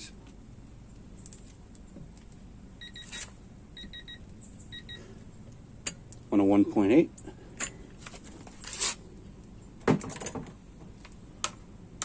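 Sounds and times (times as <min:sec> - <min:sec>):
short electronic beeps: 0:02.8 - 0:05.0.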